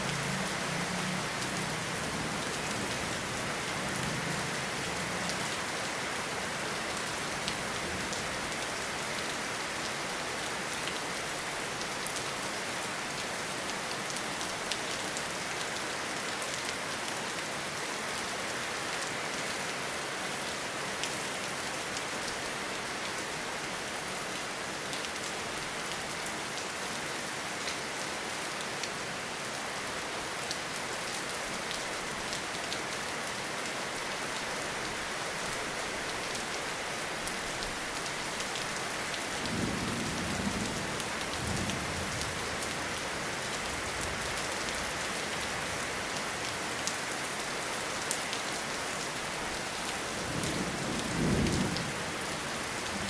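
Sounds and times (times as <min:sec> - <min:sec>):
heavy rain: 0:00.0 - 0:53.0
low rumble of thunder: 0:39.4 - 0:42.5, 0:50.2 - 0:53.0.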